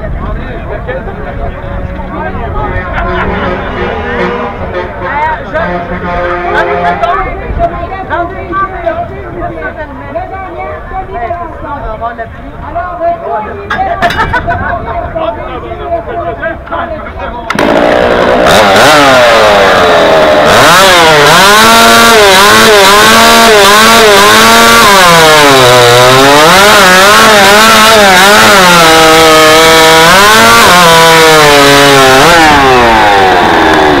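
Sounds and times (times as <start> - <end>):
chainsaw cutting: 17.5 - 34.0.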